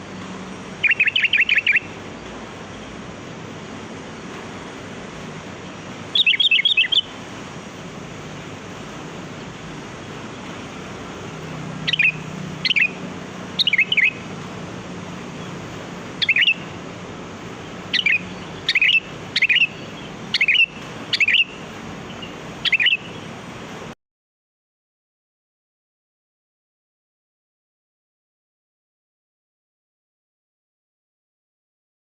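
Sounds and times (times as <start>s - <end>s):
bulbul calling: 0.1s - 2.8s, 5.6s - 7.2s, 10.3s - 14.5s, 15.2s - 23.4s.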